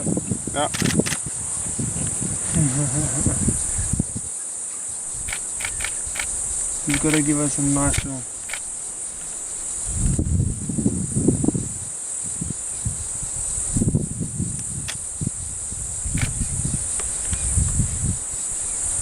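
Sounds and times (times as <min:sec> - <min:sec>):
insects chirring: 0:00.0 - 0:19.0
sharp clicks: 0:00.7 - 0:01.2, 0:05.2 - 0:08.7, 0:14.8 - 0:15.0, 0:16.2 - 0:16.4.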